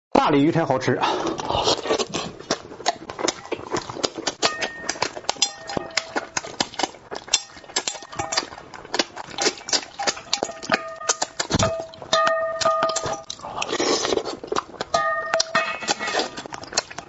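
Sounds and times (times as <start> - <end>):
lip smacks and chewing: 1.2 - 17.0.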